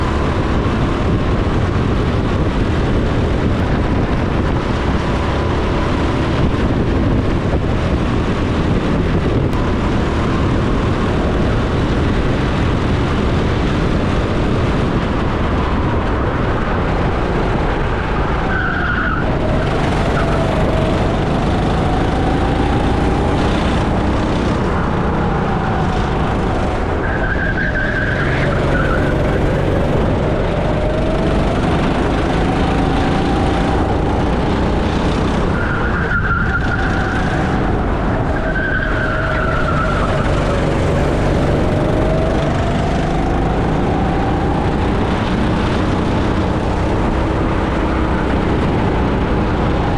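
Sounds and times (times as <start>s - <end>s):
go-kart engine running: 0.0s - 49.9s.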